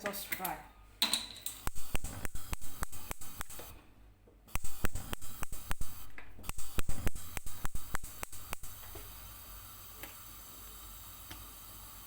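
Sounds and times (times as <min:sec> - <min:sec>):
sharp clicks and taps: 0:00.0 - 0:03.8, 0:04.5 - 0:09.1.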